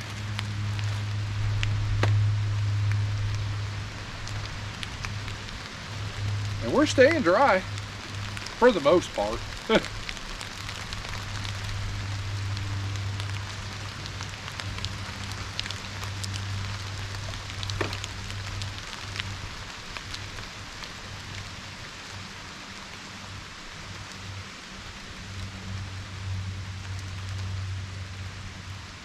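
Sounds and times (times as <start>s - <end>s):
low hum: 0.0s - 20.2s
rain falling: 0.0s - 29.0s
raindrops ticking on surfaces: 0.0s - 29.0s.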